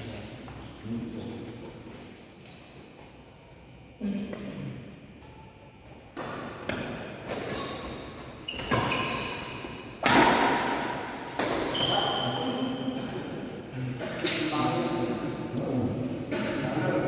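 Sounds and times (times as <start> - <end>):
shoes squeaking on court floor: 0.0 - 4.5, 5.1 - 13.1
racket hitting shuttlecock: 10.0 - 11.6.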